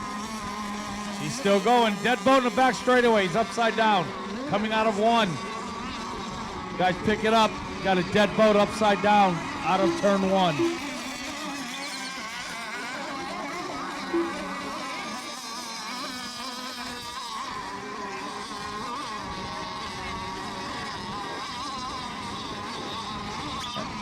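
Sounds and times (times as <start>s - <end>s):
model boat engines whining: 0.0s - 24.0s
loud blip: 9.8s - 10.9s, 14.2s - 14.5s.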